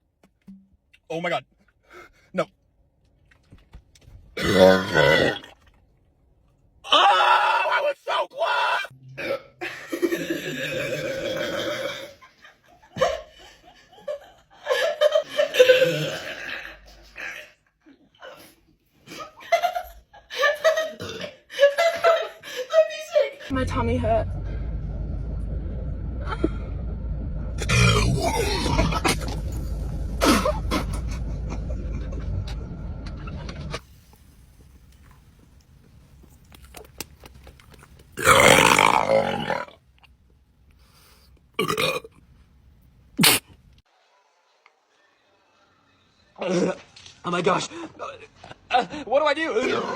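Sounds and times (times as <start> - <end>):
person burping: 4.4 - 5.5, 9.0 - 12.2, 15.7 - 16.8, 21.0 - 21.4, 27.6 - 29.4, 38.2 - 39.8, 41.6 - 42.1
person laughing: 28.0 - 29.4, 30.1 - 32.6.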